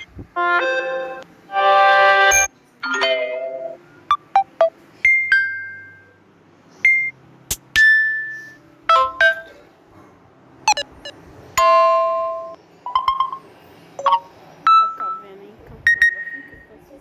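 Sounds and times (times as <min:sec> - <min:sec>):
phone notification chimes: 0:08.9 - 0:09.5, 0:14.0 - 0:15.2.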